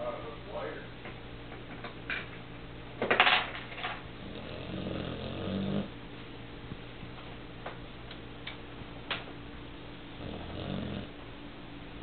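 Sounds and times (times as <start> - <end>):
dog snoring: 4.1 - 6.0, 10.1 - 11.2.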